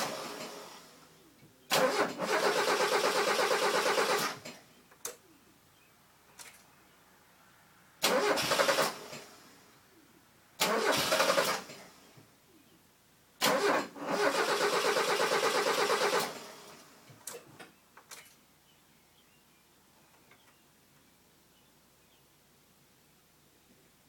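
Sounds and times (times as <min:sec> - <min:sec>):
engine cranking on starter: 0:00.0 - 0:01.1, 0:01.7 - 0:04.6, 0:08.0 - 0:09.6, 0:10.6 - 0:12.1, 0:13.4 - 0:17.6.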